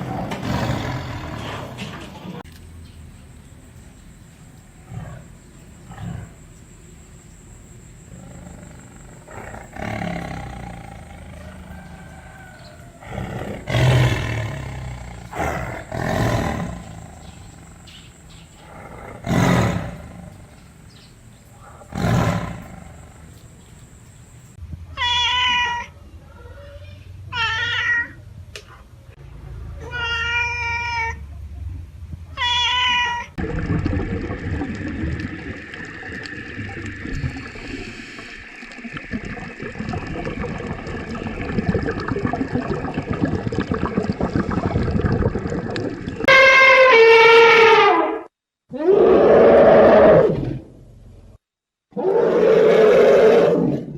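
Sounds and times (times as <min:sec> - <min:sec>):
rough roar-like animal calls: 0:08.1 - 0:18.0, 0:18.6 - 0:20.5, 0:21.7 - 0:23.4, 0:46.2 - 0:50.7, 0:51.9 - 0:53.9
high drawn-out animal calls: 0:46.2 - 0:50.4.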